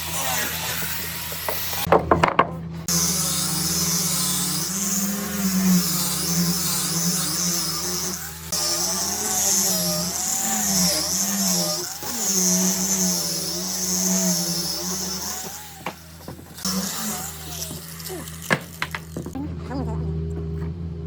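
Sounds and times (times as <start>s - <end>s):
power tool motor running: 0.0s - 2.2s, 2.8s - 19.4s
sharp knocks: 1.3s - 2.6s.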